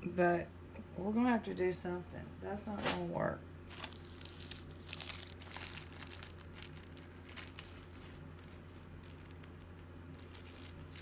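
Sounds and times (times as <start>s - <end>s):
steady low hum: 0.0s - 11.0s
plastic bag rustling: 3.7s - 11.0s.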